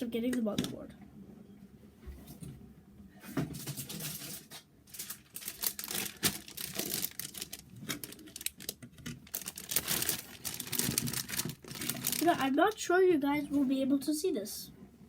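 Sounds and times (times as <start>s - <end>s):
packaging rustling and crinkling: 3.4s - 12.8s.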